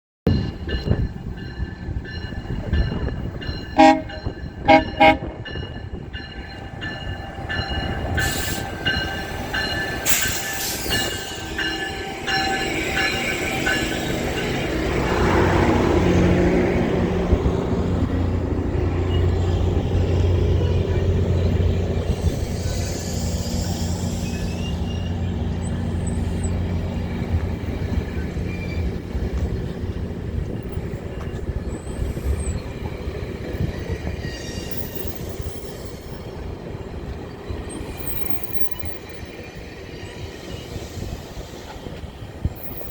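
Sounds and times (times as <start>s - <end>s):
train horn blasts: 3.8s - 5.4s.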